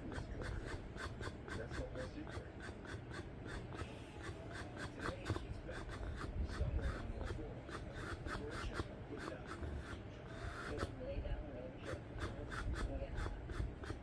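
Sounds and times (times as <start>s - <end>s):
lips sputtering with escaping air: 0.0s - 11.0s, 11.8s - 14.0s.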